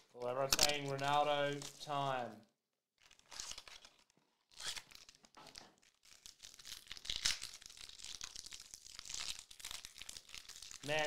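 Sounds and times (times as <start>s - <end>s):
card pack wrapper crinkling: 0.2s - 2.2s, 3.0s - 11.0s.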